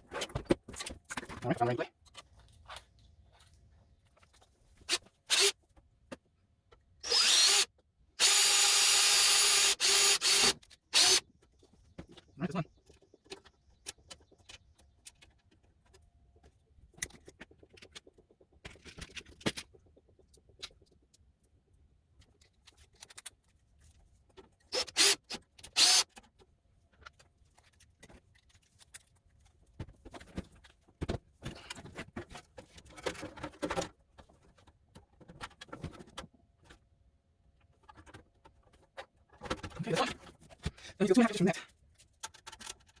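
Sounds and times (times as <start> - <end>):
loud rasping bursts: 7.0 - 11.2
metal parts clicking and rattling: 41.9 - 43.0.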